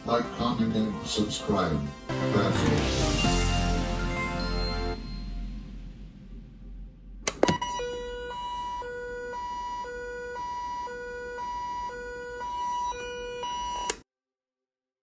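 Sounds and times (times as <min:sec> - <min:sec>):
steady alert beep: 0:03.1 - 0:05.7, 0:07.4 - 0:14.0
pulsing two-pitch tone: 0:03.1 - 0:06.4, 0:07.2 - 0:13.9
clicks: 0:07.2 - 0:07.8, 0:12.4 - 0:14.0.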